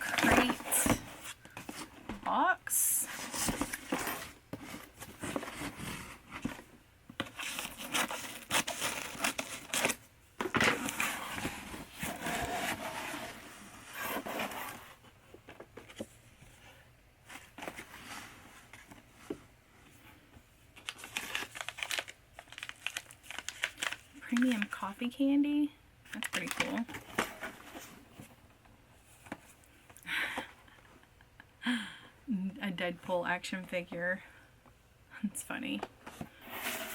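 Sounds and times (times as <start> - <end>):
paper crinkling and rustling: 20.8 - 24.9, 26.1 - 28.3.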